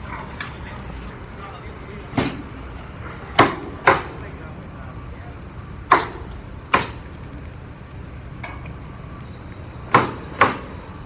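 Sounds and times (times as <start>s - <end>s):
hammer striking nails: 2.2s - 2.6s, 3.4s - 4.3s, 5.9s - 7.2s, 9.9s - 10.9s.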